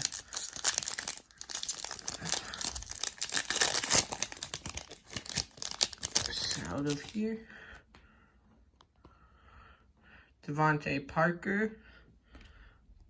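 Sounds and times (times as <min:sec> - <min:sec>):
foil wrapper crinkling: 0:00.0 - 0:07.2.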